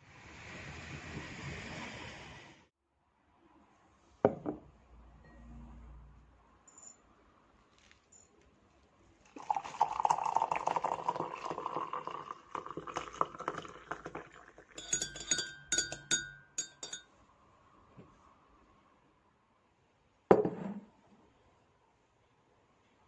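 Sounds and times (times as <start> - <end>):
liquid pouring into a glass: 9.3 - 16.2
glass clinking: 9.4 - 17.2.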